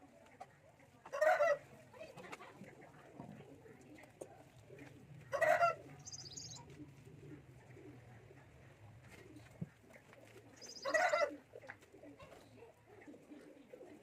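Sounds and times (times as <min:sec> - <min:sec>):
loud bird calls: 0:05.6 - 0:06.6, 0:10.6 - 0:11.3
high bird chirps: 0:06.0 - 0:06.6, 0:10.6 - 0:10.9.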